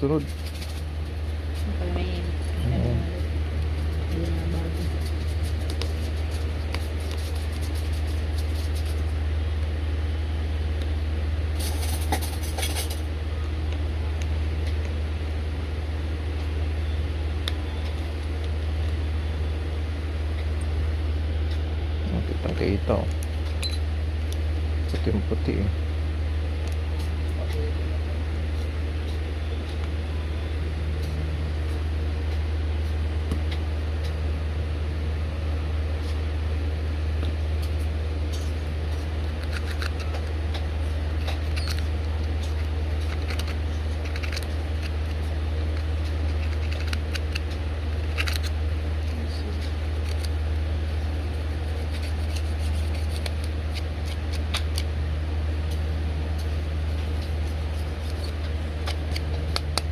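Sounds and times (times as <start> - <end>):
low hum: 0.0 - 59.9
phone parts clicking: 41.2 - 45.0, 46.3 - 48.6.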